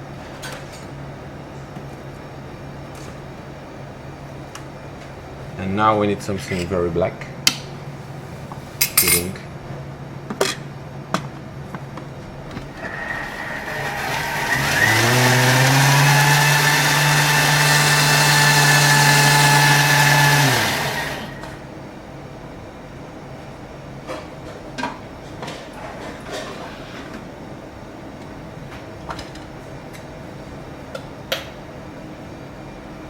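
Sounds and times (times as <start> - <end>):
blender motor running: 12.7 - 21.6.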